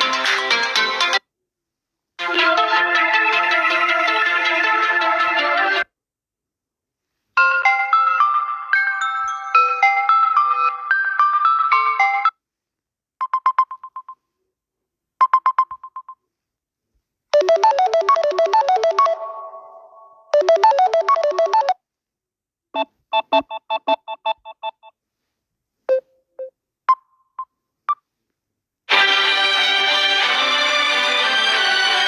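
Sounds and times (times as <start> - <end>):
phone beeps: 13.2 - 14.2, 15.2 - 16.2, 17.4 - 19.3, 20.4 - 21.8, 22.8 - 24.9
short melodic phone phrases: 17.4 - 21.8.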